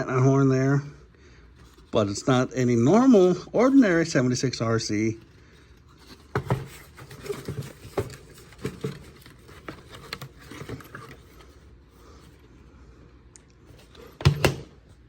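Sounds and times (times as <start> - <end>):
hard plastic clicking and scraping: 5.7 - 11.6.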